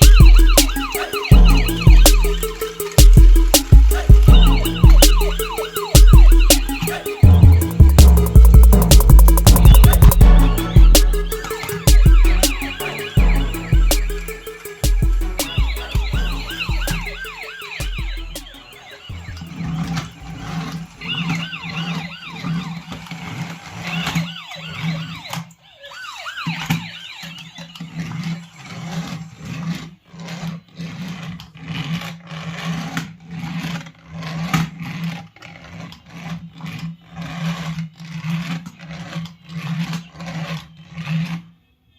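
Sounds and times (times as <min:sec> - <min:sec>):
toy police car siren warbling: 0:00.0 - 0:08.6, 0:09.4 - 0:30.9
pulsing low buzzing hum: 0:00.0 - 0:21.0.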